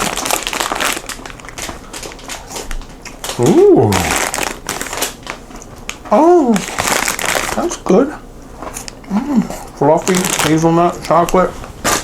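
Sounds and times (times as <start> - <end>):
crunching clicks of eating: 0.0 - 7.6
snack wrapper crinkling: 0.0 - 7.8, 10.0 - 12.0
person saying ooh: 3.4 - 4.3.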